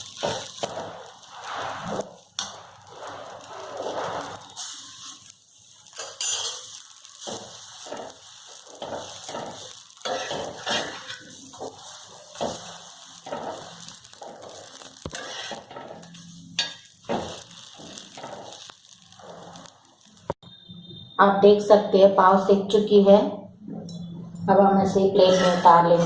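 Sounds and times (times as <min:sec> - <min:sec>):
spatula scraping a griddle: 0:00.0 - 0:20.1, 0:24.8 - 0:26.0
butter sizzling: 0:00.0 - 0:20.4.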